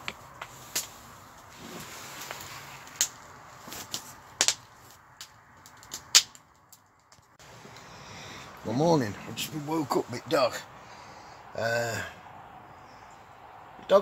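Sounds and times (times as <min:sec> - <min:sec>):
sharp cracks and clicks: 0:02.2 - 0:07.9
faint steady hiss: 0:06.7 - 0:14.0.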